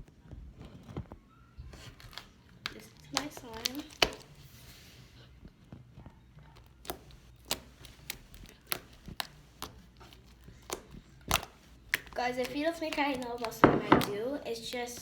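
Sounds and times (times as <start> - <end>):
slime squishing and popping: 1.8 - 4.4, 6.6 - 14.8.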